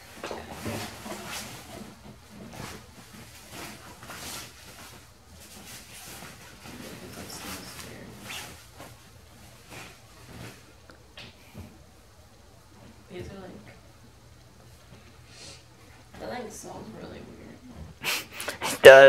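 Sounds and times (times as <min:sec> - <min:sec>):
fabric rustling and swishing: 0:00.0 - 0:10.8.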